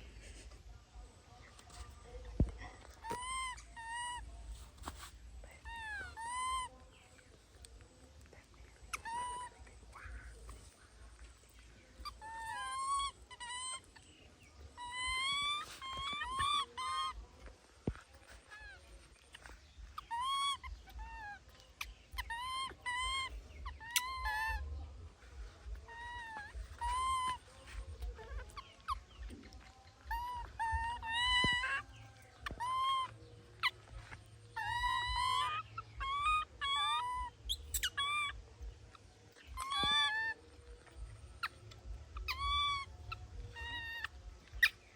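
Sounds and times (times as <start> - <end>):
baby monkey crying: 3.0 - 4.2, 5.6 - 6.8, 8.8 - 10.6, 12.0 - 14.1, 14.7 - 17.2, 18.5 - 24.7, 25.6 - 44.9.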